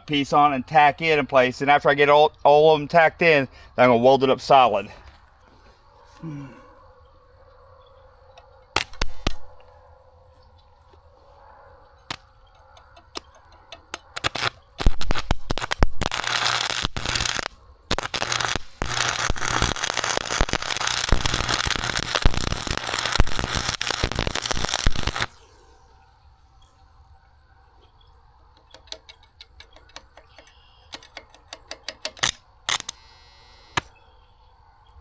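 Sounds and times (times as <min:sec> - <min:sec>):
electric arc welding crackle: 0:08.8 - 0:09.7, 0:13.0 - 0:25.6, 0:32.1 - 0:33.9.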